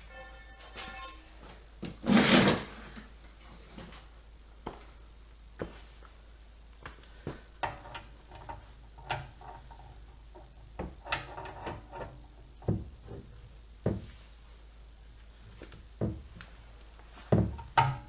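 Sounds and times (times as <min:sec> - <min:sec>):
heavy knocks: 0:16.0 - 0:16.3.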